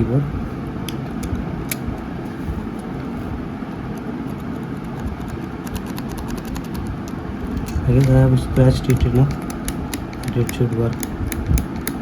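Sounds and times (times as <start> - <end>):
low background rumble: 0.0 - 12.0
scratchy scraping clicks: 4.0 - 12.0.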